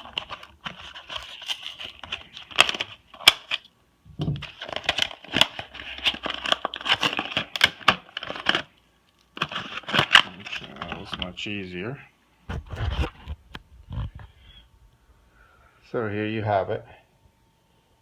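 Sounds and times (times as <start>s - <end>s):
plastic packaging crinkling: 0.0s - 11.5s.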